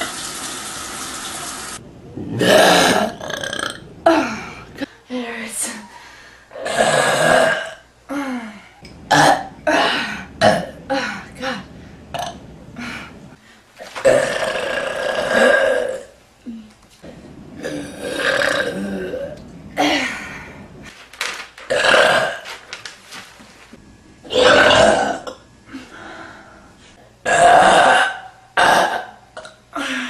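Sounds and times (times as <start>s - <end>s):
woman burping: 2.3s - 4.6s, 6.6s - 7.8s, 9.1s - 12.4s, 14.0s - 16.1s, 17.6s - 20.3s, 24.3s - 25.4s, 27.2s - 30.0s.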